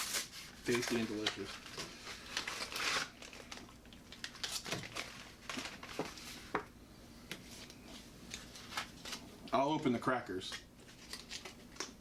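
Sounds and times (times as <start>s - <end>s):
ration packets crinkling: 0.6s - 6.1s.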